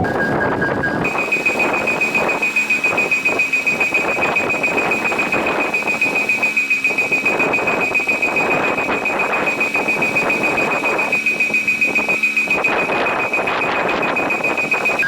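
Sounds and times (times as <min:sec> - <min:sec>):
level crossing bell ringing: 0:01.0 - 0:15.0.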